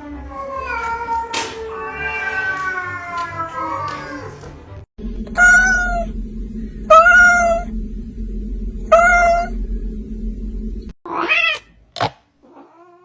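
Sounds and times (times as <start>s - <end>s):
steady low hum: 5.0s - 11.0s
cat meowing: 5.4s - 6.1s, 6.9s - 7.7s, 8.9s - 9.5s.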